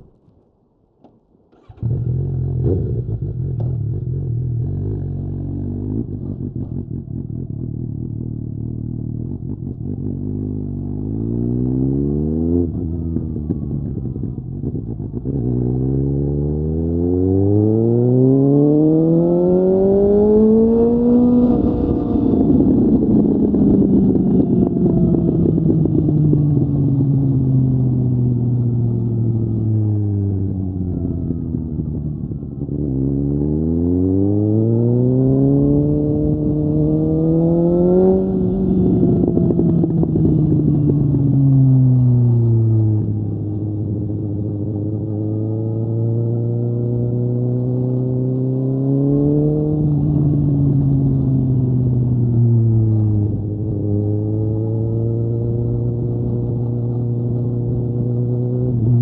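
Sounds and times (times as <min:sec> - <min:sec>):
motorcycle engine accelerating: 0:01.5 - 0:59.0.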